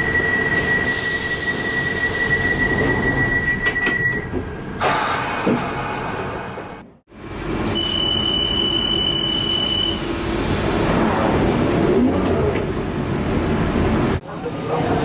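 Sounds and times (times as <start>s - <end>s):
high door-warning beep: 7.7s - 10.0s
train rumble: 9.9s - 15.0s.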